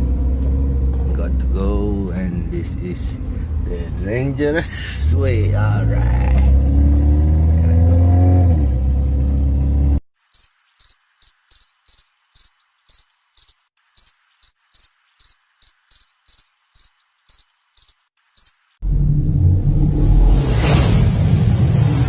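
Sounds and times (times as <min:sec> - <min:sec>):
vehicle engine rumble: 0:00.0 - 0:10.0
cricket chirping: 0:10.3 - 0:18.6.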